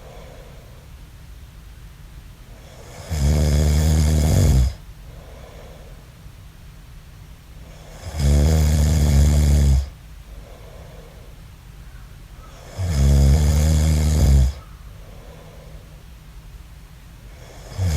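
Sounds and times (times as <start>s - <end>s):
soft breath: 0.0s - 1.0s, 5.0s - 6.2s, 10.3s - 12.6s, 14.6s - 16.2s
man snoring: 2.6s - 4.8s, 7.7s - 10.0s, 12.6s - 14.6s, 17.4s - 17.9s.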